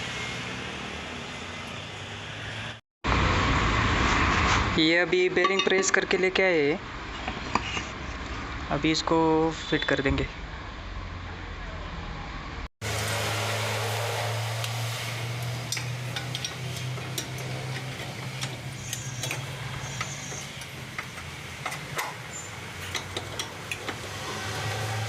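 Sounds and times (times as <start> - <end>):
metallic clicks of hand tools: 15.7 - 24.1.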